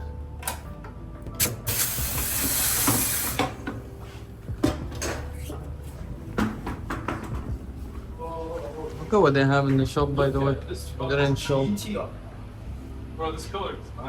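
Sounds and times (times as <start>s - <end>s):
air hissing burst: 1.4s - 3.6s
steady low hum: 3.4s - 14.0s.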